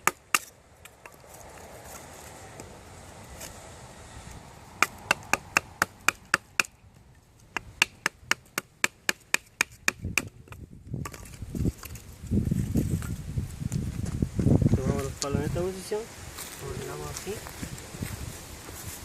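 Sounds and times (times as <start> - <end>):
knife chopping into wood: 0.0 - 1.2, 4.8 - 6.7, 7.5 - 11.3.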